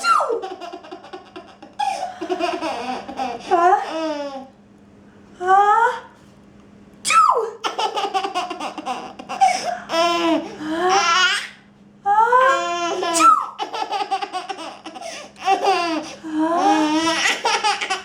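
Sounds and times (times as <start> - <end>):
baby giggling: 0.1 - 4.5, 7.6 - 11.4, 12.7 - 18.0.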